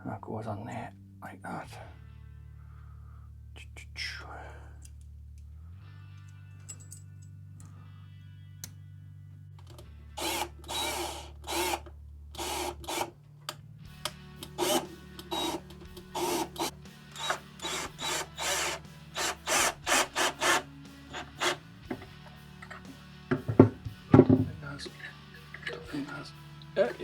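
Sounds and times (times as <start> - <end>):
rasping strokes of hand tool: 14.6 - 22.8.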